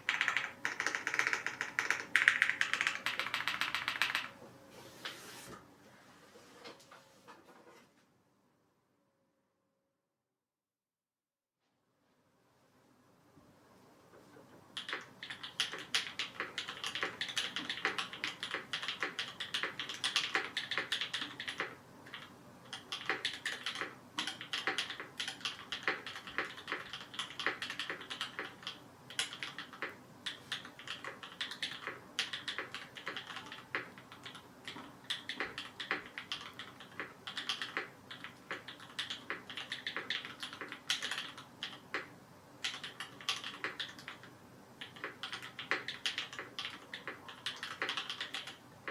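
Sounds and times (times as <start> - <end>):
typing on mechanical keyboard: 0.0 - 4.4, 14.8 - 48.9.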